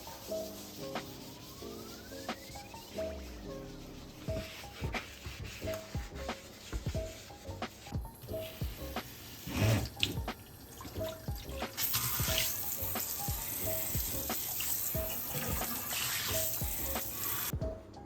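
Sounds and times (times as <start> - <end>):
water running from tap: 8.1 - 17.5.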